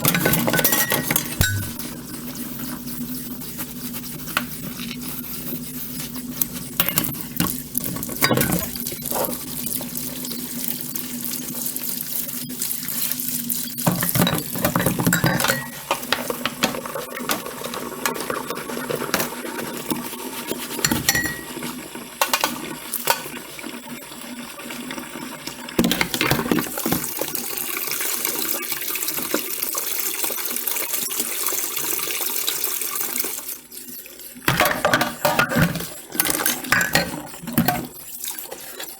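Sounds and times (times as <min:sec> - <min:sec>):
dishes clinking and knocking: 0:00.0 - 0:02.0, 0:06.8 - 0:08.8, 0:13.8 - 0:19.4, 0:20.8 - 0:23.3, 0:34.5 - 0:37.9
tap water running into sink: 0:00.0 - 0:03.0, 0:06.0 - 0:33.7, 0:34.3 - 0:38.9.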